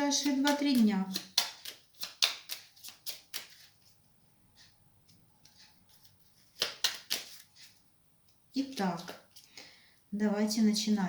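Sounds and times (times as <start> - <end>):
playing cards being shuffled: 0.1 - 4.0, 5.0 - 7.8, 8.6 - 9.6.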